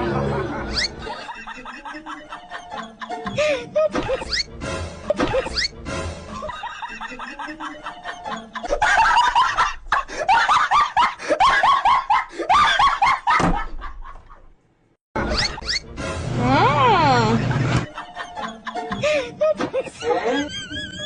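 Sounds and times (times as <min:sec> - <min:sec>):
background music: 0:00.0 - 0:09.7, 0:15.2 - 0:21.0.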